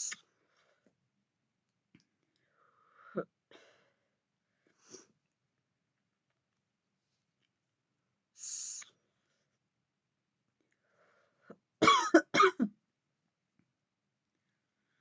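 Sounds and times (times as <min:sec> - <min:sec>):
soft breathy hiss: 0:00.0 - 0:00.8, 0:08.3 - 0:09.5
woman coughing: 0:11.8 - 0:12.8.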